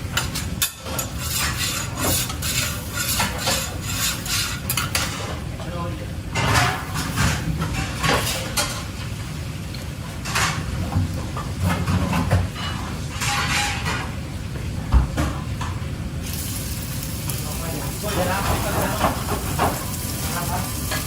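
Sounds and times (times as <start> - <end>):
metal utensil scraping a pot: 0.9 - 5.1.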